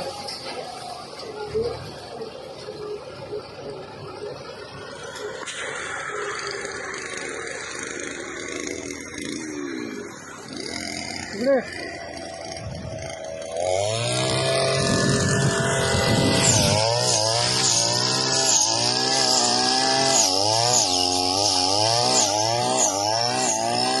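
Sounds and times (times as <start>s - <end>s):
steady high whine: 0.0s - 18.2s
diesel engine running hard: 0.0s - 24.0s.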